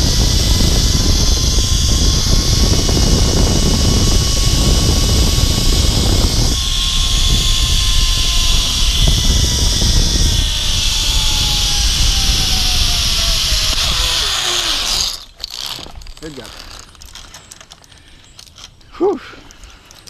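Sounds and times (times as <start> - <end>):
wind rush on microphone: 0.0 - 15.2
zip line pulleys whining on cable: 0.0 - 20.0.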